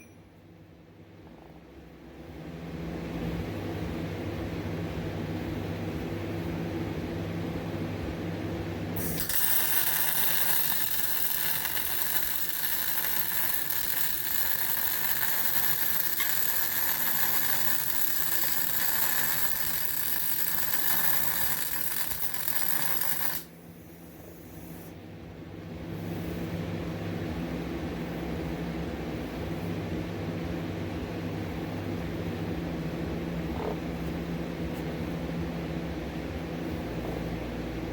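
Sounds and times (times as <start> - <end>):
steady low hum: 0.0 - 37.9
welding arc crackling: 9.0 - 23.6.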